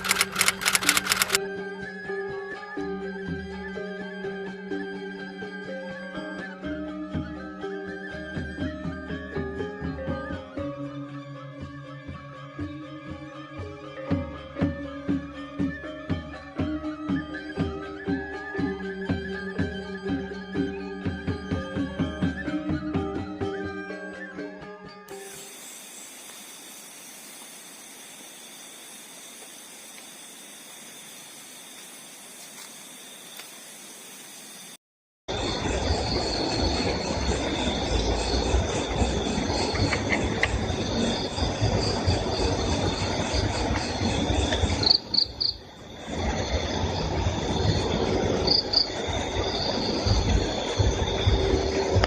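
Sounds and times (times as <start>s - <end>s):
crickets chirping: 0.0s - 1.4s, 25.1s - 52.0s
faint ticks: 0.0s - 1.4s
faint high steady tones: 25.1s - 34.8s.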